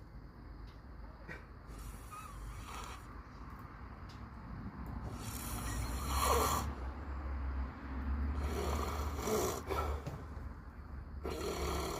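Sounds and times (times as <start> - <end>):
deep snoring: 1.7 - 3.1, 5.1 - 6.8, 8.3 - 10.1, 11.2 - 11.9.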